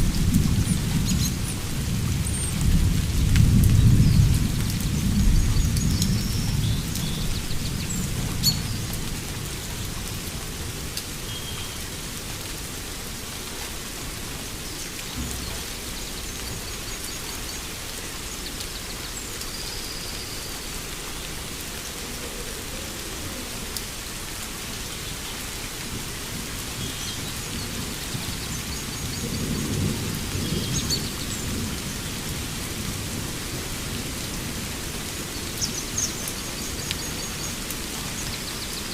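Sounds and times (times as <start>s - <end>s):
steady rain: 0.0s - 38.9s.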